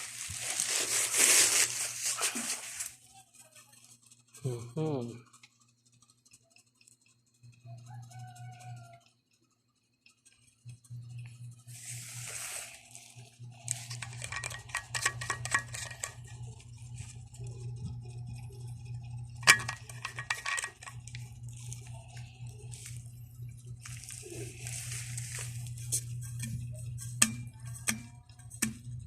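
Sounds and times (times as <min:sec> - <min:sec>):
packaging rustle: 0:00.0 - 0:03.0, 0:23.8 - 0:25.8
steady low hum: 0:00.0 - 0:29.0
clicks and rattles: 0:12.9 - 0:29.0.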